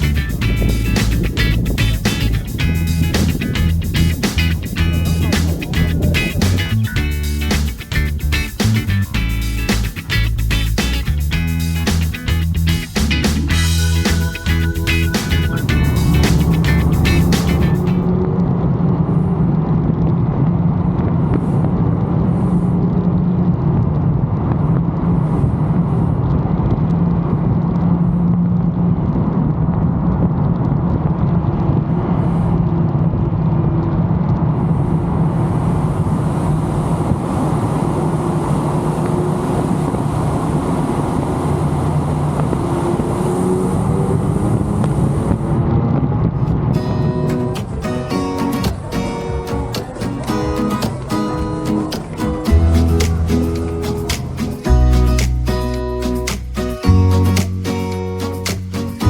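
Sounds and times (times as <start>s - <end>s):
car engine running: 0.0s - 18.1s, 35.7s - 45.7s
tyre and road noise: 0.0s - 59.0s.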